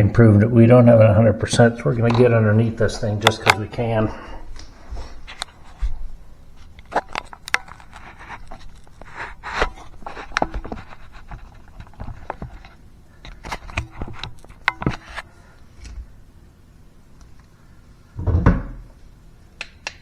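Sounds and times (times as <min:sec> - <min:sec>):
objects knocking and scraping in cabinet: 0:18.2 - 0:19.0.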